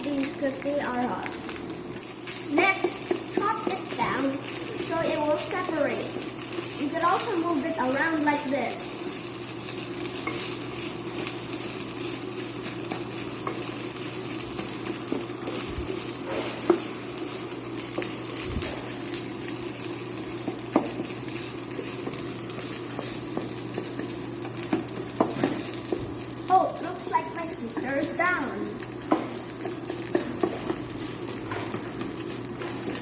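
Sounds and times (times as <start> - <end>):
rice sizzling in oil: 0.0 - 33.0
utensil stirring in pan: 0.0 - 33.0.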